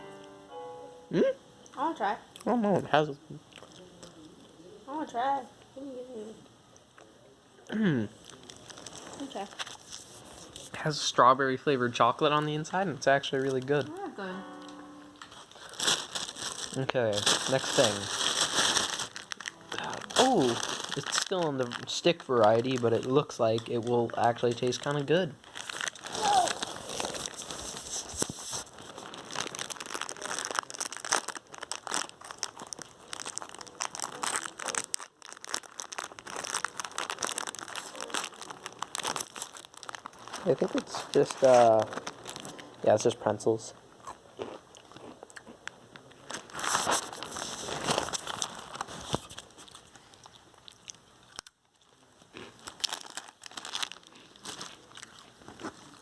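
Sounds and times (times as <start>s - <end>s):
crunching of pretzels being eaten: 3.4s - 4.4s, 6.8s - 9.9s, 15.4s - 27.6s, 28.9s - 42.8s, 44.0s - 56.0s
plastic wrapper crinkling: 8.2s - 11.2s, 11.8s - 14.1s, 15.2s - 43.6s, 46.0s - 56.0s.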